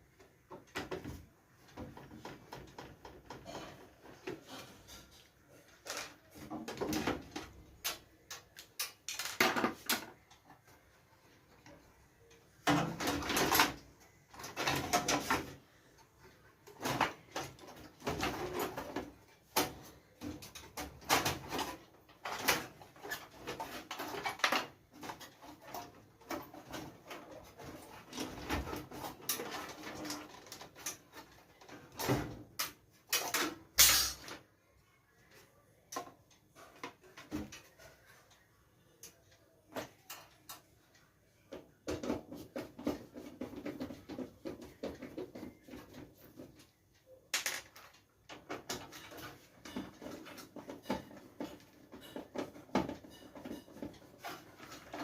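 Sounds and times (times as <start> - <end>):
computer parts clicking and clattering: 0.4 - 10.8, 11.5 - 34.5, 35.9 - 55.0.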